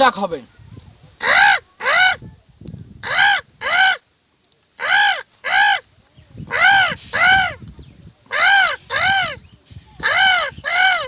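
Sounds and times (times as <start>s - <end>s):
man imitating crow caws: 3.0s - 4.0s, 8.3s - 9.4s.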